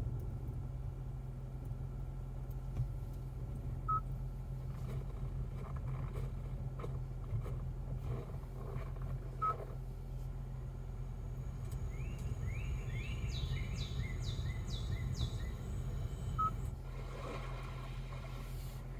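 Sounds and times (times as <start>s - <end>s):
low cabin hum: 0.0s - 18.9s
bird chirping: 11.8s - 16.6s.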